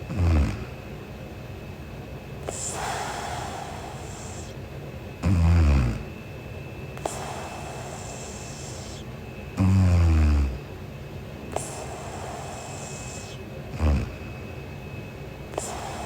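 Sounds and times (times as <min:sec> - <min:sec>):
woman snoring: 0:00.0 - 0:00.8, 0:02.4 - 0:04.6, 0:05.2 - 0:06.2, 0:07.0 - 0:09.0, 0:09.6 - 0:10.7, 0:11.5 - 0:14.5, 0:15.6 - 0:16.0
soft airy breaths: 0:02.2 - 0:16.0.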